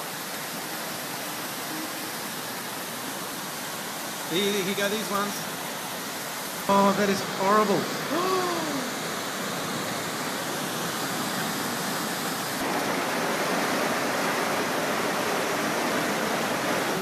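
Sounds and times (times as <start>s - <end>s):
floodwater rushing: 0.0s - 17.0s.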